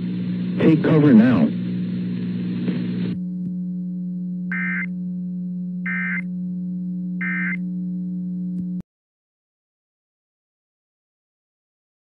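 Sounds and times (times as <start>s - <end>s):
low electronic hum: 0.0s - 8.8s
emergency alert data tones: 4.5s - 4.9s, 5.8s - 6.3s, 7.2s - 7.6s.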